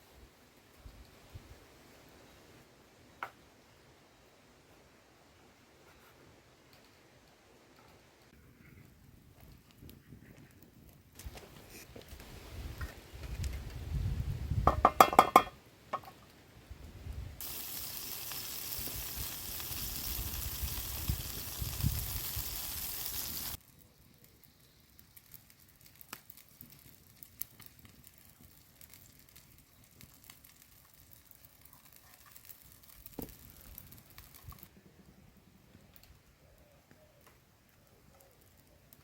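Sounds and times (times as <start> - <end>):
omelette sizzling in a pan: 17.4 - 34.7
faint clicks and ticks: 23.2 - 34.7, 35.7 - 39.0.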